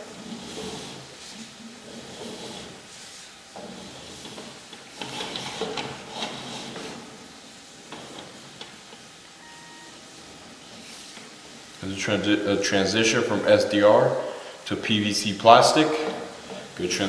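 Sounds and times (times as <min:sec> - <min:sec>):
push cable rubbing and scraping: 0:00.0 - 0:07.2, 0:07.8 - 0:09.0.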